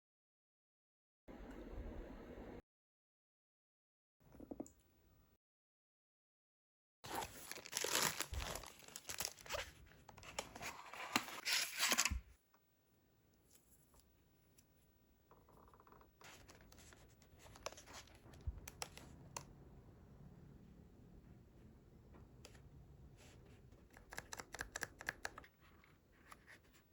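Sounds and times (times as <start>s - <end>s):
packaging being torn and crinkled: 7.1s - 9.7s, 11.0s - 12.2s.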